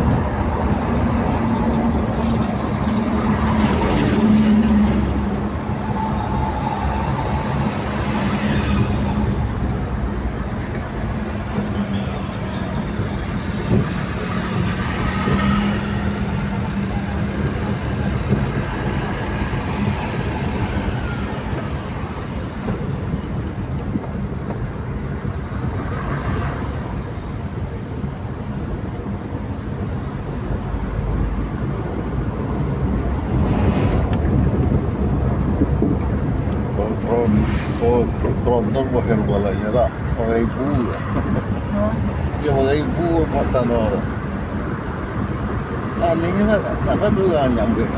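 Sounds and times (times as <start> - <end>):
vehicle passing with deep rumble: 0.0 - 11.7, 30.2 - 47.9
highway traffic noise: 0.0 - 47.9.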